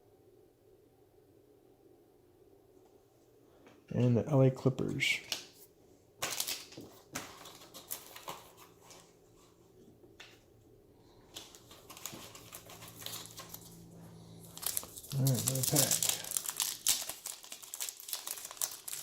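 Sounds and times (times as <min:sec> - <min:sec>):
faint low hum: 0:06.8 - 0:19.0.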